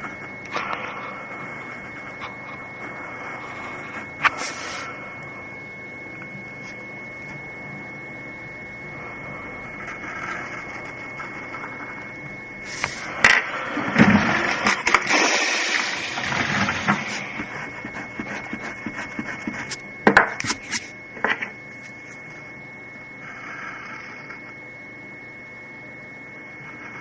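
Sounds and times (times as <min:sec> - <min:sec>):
pen scratching on paper: 0:17.1 - 0:19.8.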